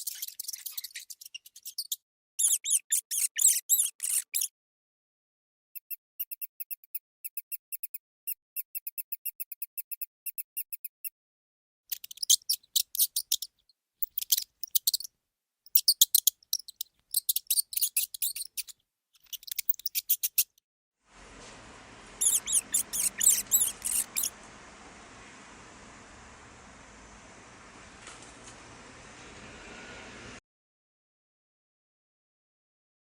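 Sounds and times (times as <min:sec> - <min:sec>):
mouse squeaking: 0:00.0 - 0:04.5, 0:05.8 - 0:11.1, 0:11.9 - 0:15.1, 0:15.7 - 0:20.6, 0:22.2 - 0:24.4
steady background hiss: 0:21.1 - 0:30.4.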